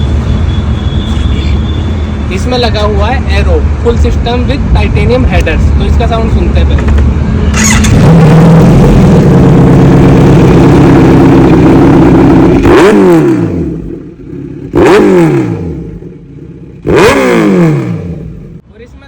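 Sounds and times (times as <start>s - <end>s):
motorcycle engine revving: 3.6s - 18.6s.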